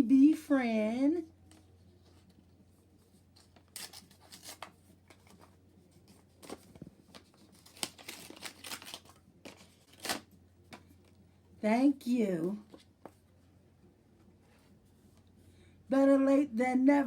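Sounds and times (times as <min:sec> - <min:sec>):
paper crinkling and tearing: 0:03.3 - 0:10.3.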